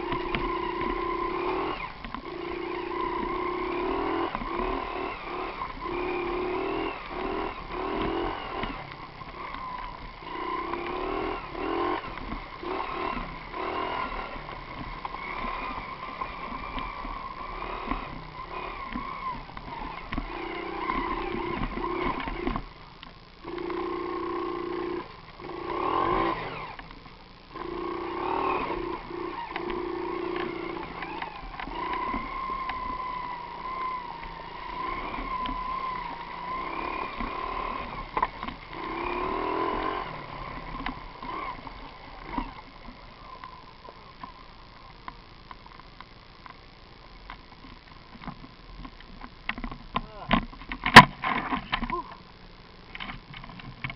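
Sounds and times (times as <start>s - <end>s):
small motorcycle engine revving: 0.0s - 45.1s.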